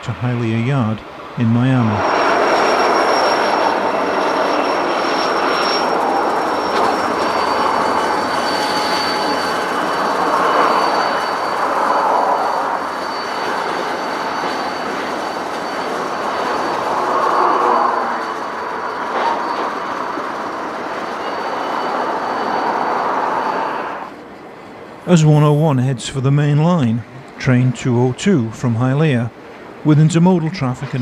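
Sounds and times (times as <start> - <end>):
freight train rumbling on rails: 0.0 - 31.0
high wheel squeal: 1.4 - 25.8.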